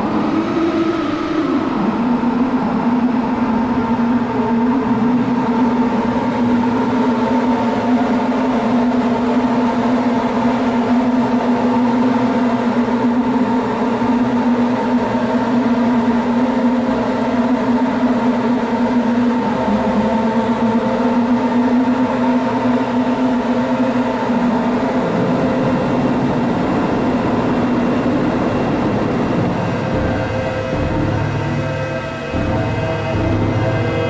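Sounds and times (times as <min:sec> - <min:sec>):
gritty synthesizer drone: 0:25.2 - 0:34.0.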